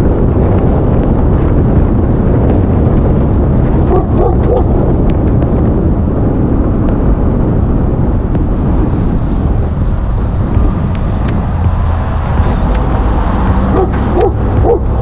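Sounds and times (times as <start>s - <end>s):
vehicle rumbling: 0.0s - 15.0s
dog barking: 3.9s - 4.7s, 13.7s - 14.9s.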